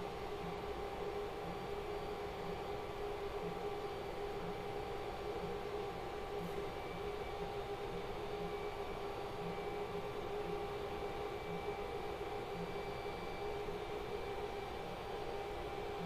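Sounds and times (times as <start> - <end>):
three d printer mechanical hum: 0.0 - 16.0.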